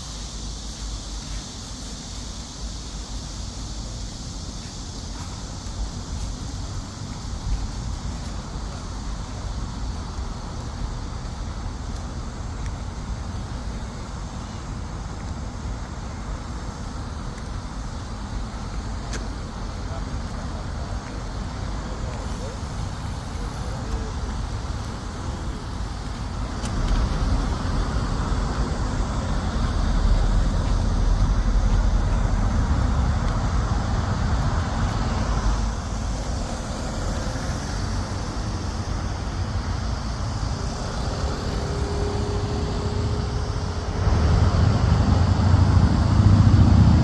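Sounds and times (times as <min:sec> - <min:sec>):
passing cars rushing: 0:22.4 - 0:47.0.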